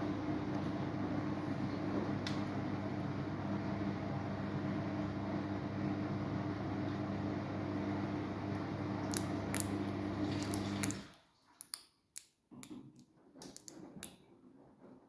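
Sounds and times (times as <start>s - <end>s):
washing machine humming: 0.0s - 11.1s.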